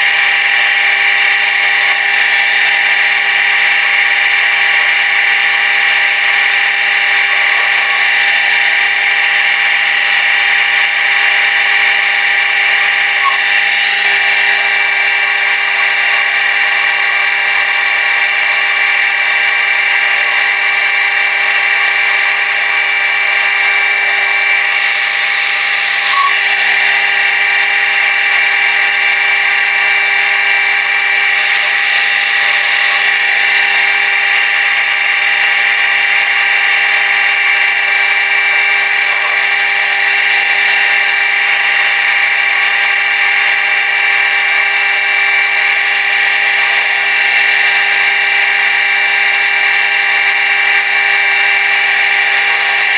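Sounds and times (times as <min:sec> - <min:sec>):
metal lathe whine: 0:00.0 - 0:52.9.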